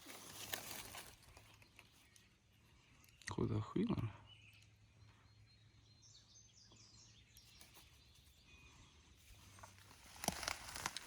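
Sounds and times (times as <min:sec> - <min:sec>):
leaves rustling and crackling: 0:00.0 - 0:02.2, 0:09.4 - 0:11.0
faint high bird chirps: 0:01.2 - 0:09.9.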